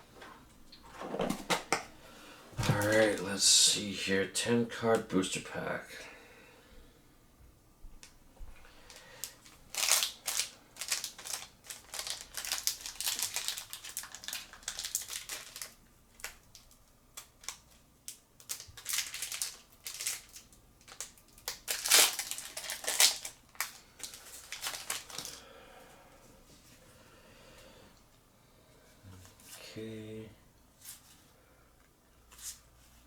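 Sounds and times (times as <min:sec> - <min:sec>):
wrapper crinkling and rustling: 0:02.6 - 0:03.3, 0:08.8 - 0:25.4.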